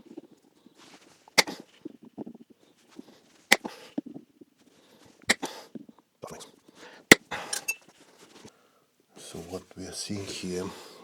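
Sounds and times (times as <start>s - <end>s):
nails snapping as cut: 1.4s - 1.6s, 3.5s - 3.8s, 5.3s - 5.6s.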